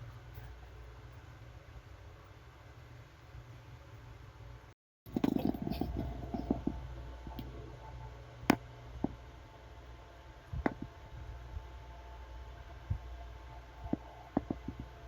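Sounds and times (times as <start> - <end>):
low steady hum: 0.0 - 15.0.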